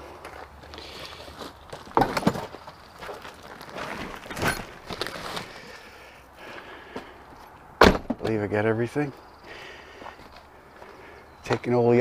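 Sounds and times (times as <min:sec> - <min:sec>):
knocks and clatters of handling: 0:01.7 - 0:05.5.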